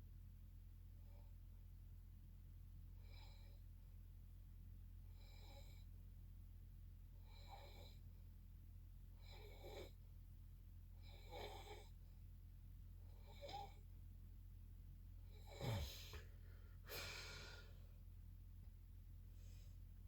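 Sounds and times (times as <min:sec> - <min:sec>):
steady low hum: 0:00.0 - 0:20.0
soft snoring: 0:03.0 - 0:03.6, 0:05.1 - 0:05.9, 0:07.2 - 0:08.0, 0:09.2 - 0:10.0, 0:11.0 - 0:12.0, 0:13.1 - 0:13.8, 0:15.3 - 0:16.3.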